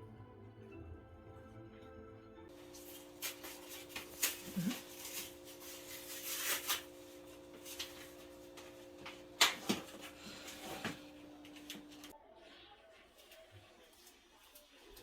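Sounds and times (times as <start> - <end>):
objects rustling and clicking: 2.5 - 12.2.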